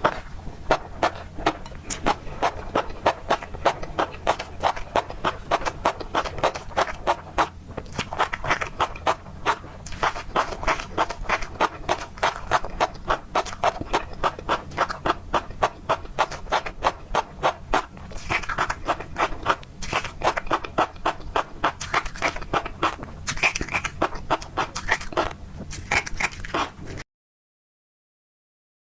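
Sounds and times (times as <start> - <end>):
chewing crunchy fish roe: 0.0 - 27.0.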